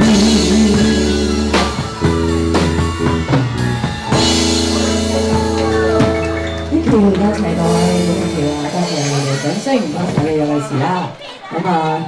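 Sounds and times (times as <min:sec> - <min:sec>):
drum hits: 0:00.0 - 0:11.1
pop song instrumental: 0:00.0 - 0:11.5.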